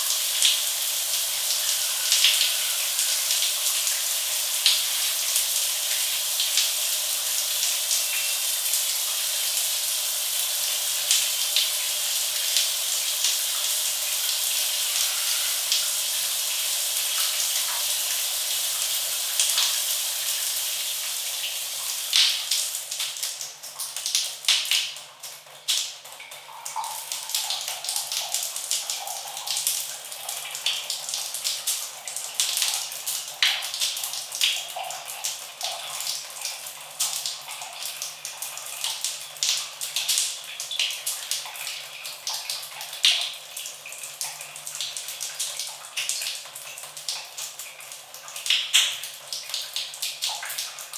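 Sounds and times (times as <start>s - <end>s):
shower spray hissing: 0.0s - 10.4s, 11.1s - 22.1s
water splashing and dripping: 0.0s - 50.9s.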